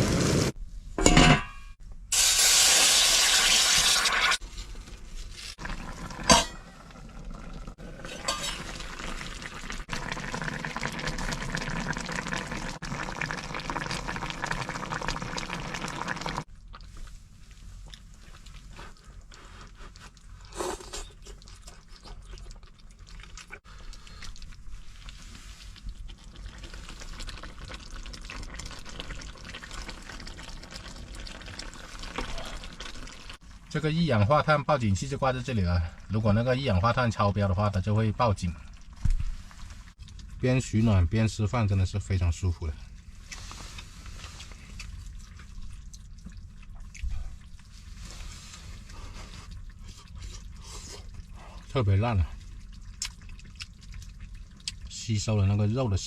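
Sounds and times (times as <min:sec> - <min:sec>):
food sizzling in a pan: 0:02.1 - 0:04.4.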